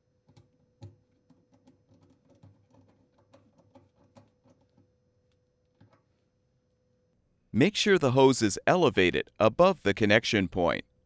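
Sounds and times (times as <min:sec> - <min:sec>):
faint steady hum: 0:00.0 - 0:11.0
hands clicking and tapping hose: 0:00.2 - 0:06.1.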